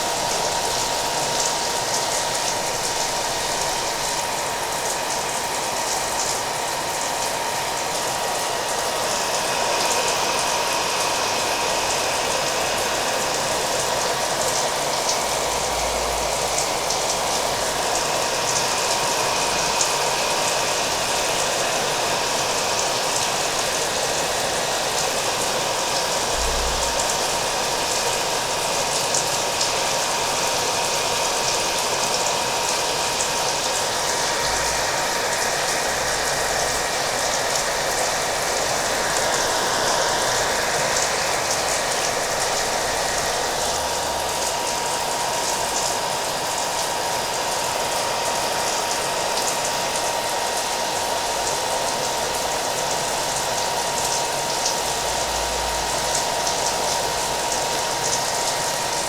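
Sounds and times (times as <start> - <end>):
hair dryer whining: 0.0 - 59.0
rain falling: 30.9 - 59.0.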